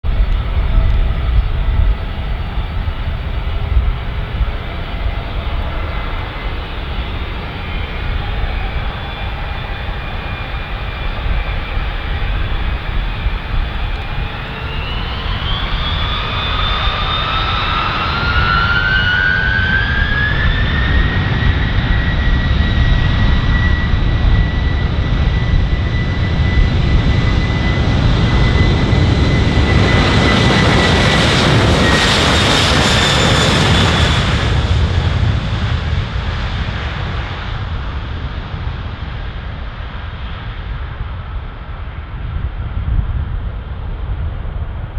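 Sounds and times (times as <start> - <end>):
aircraft turbine engines whining: 0.0 - 44.9.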